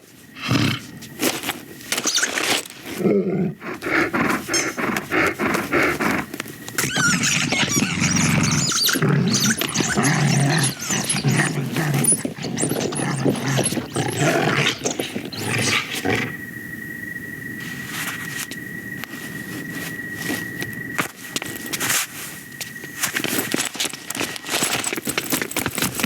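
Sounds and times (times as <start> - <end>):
animal snarling and growling: 0.4 - 1.0, 2.8 - 16.5.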